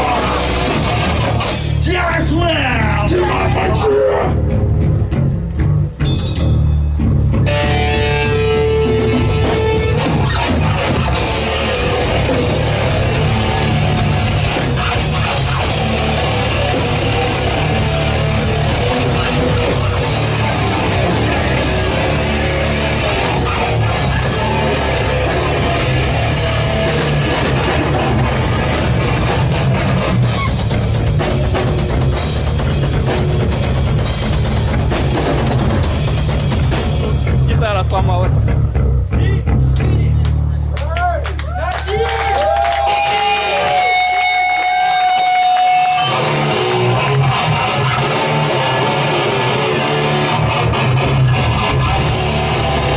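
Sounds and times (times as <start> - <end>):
drum kit with cymbals: 0.0 - 3.2, 4.4 - 38.7, 52.0 - 52.9
rock band playing live: 0.0 - 40.8, 42.4 - 52.9
electric guitar: 0.0 - 52.9.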